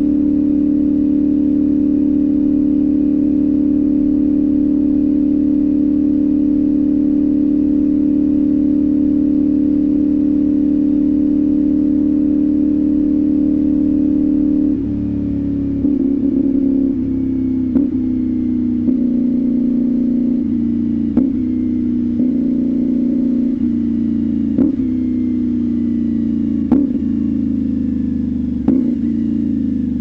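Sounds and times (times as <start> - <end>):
motorcycle engine cruising: 0.0 - 30.0.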